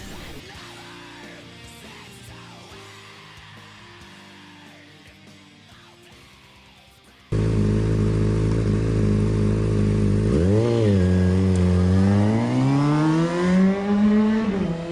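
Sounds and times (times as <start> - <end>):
motorcycle engine idling and revving: 7.3 - 14.9.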